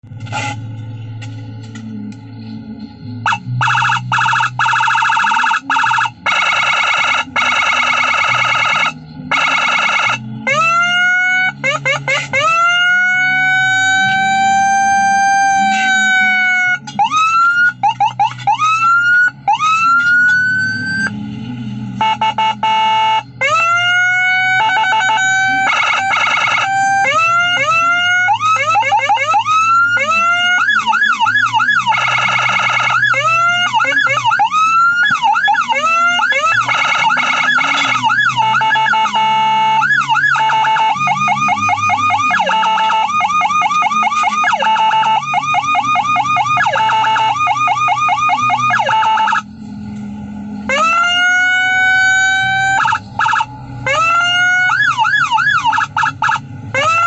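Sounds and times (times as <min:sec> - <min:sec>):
electronic siren: 0:00.0 - 0:57.0.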